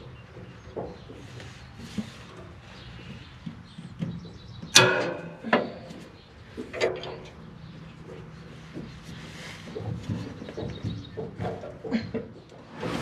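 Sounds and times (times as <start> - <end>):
metallic knocks and clanks of tools: 4.7 - 5.9, 6.7 - 7.4.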